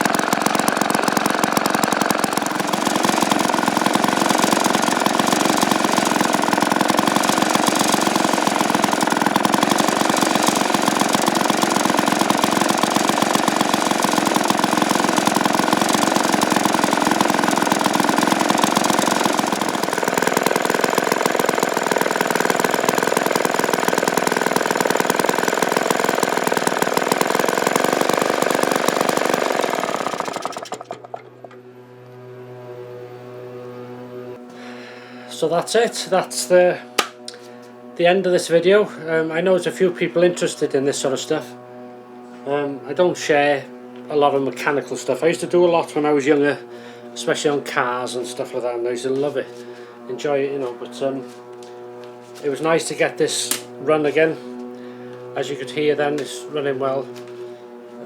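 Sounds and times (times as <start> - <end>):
lawnmower engine running: 0.0 - 31.6, 49.2 - 58.0.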